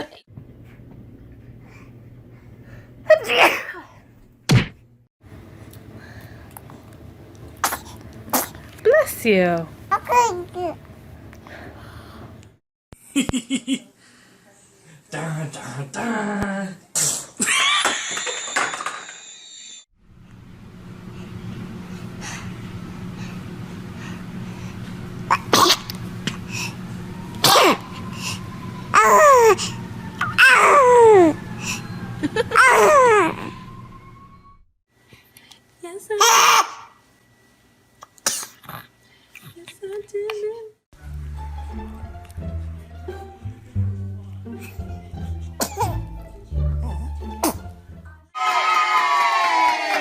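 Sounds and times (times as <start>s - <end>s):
baby sneezing: 3.1s - 3.9s, 7.6s - 8.6s, 25.3s - 25.9s, 27.4s - 27.8s, 36.2s - 36.9s, 38.2s - 38.8s, 45.6s - 46.0s, 47.4s - 47.7s
steady low hum: 20.0s - 36.1s.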